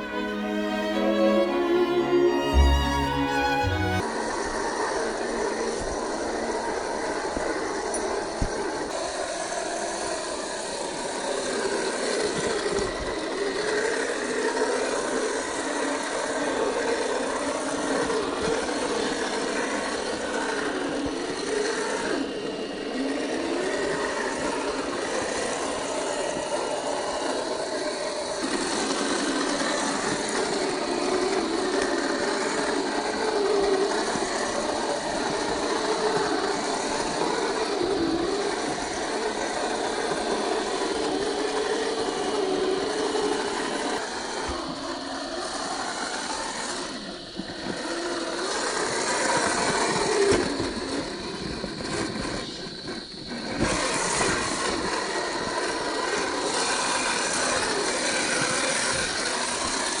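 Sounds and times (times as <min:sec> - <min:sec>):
toy car electric motor whining: 0:55.2 - 1:00.0.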